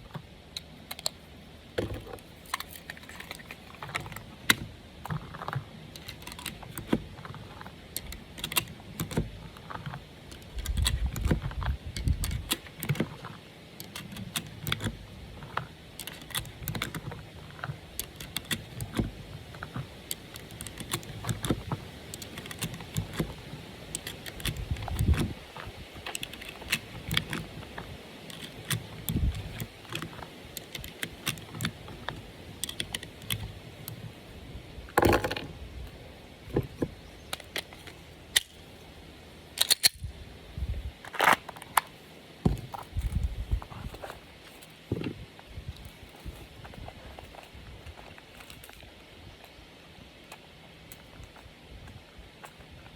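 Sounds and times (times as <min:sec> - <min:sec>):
metallic clicks and rattles: 0:01.8 - 0:34.1, 0:36.5 - 0:38.7, 0:39.5 - 0:40.1.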